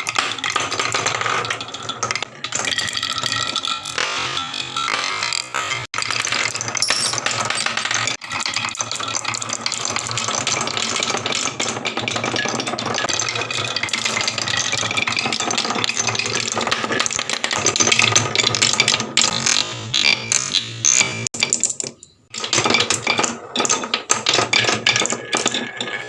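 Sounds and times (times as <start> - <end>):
wooden marble run clattering: 6.3 - 19.1, 21.4 - 26.0.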